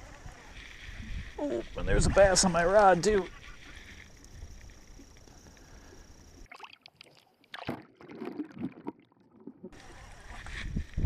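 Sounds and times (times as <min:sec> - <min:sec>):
boat on water: 0:00.0 - 0:06.5, 0:09.5 - 0:11.0
water splashing: 0:00.2 - 0:10.6.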